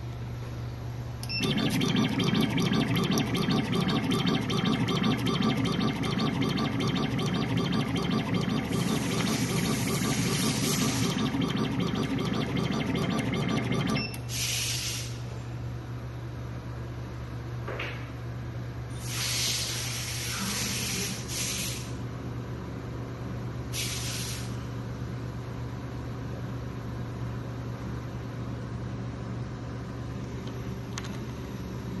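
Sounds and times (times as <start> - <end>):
cutting machine humming: 1.3 - 14.0.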